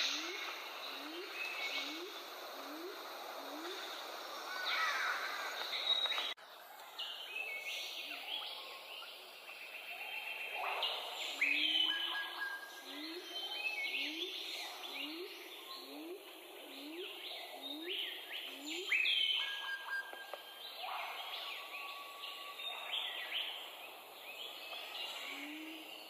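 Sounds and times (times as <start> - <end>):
birds chirping and whistling: 0.0 - 2.9, 4.5 - 6.4, 9.9 - 26.0.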